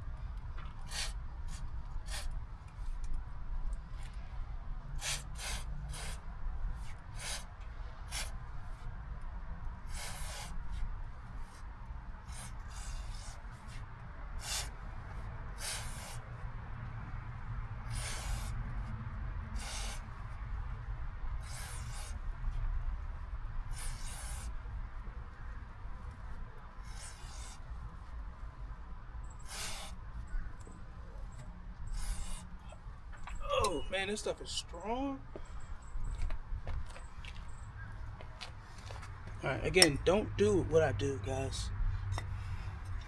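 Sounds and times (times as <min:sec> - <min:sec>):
aerosol spray hissing: 0:05.0 - 0:06.2, 0:07.2 - 0:07.4, 0:09.9 - 0:10.6, 0:14.4 - 0:14.7, 0:15.6 - 0:16.2, 0:17.9 - 0:18.5, 0:19.6 - 0:20.0, 0:21.4 - 0:22.2, 0:29.4 - 0:30.0.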